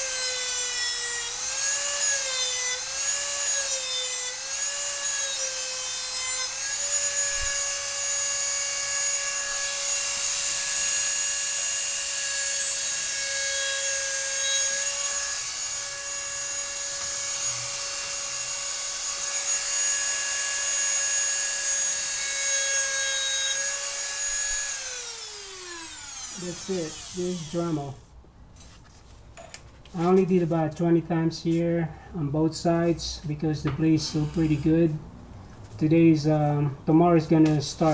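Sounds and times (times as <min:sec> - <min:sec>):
rotary tool grinding metal blade: 0:00.0 - 0:28.1, 0:34.0 - 0:34.9.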